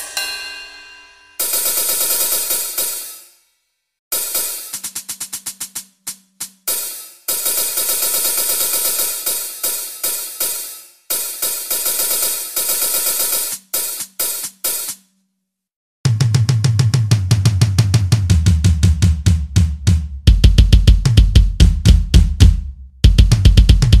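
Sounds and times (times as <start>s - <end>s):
cymbal and hi-hat crashes: 0.0s - 1.9s, 4.1s - 7.3s
fast drum pattern: 1.4s - 3.1s, 4.1s - 15.0s, 16.1s - 24.0s.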